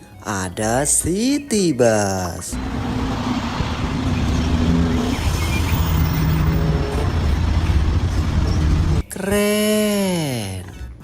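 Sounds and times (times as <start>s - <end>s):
bus engine running: 2.6s - 9.0s.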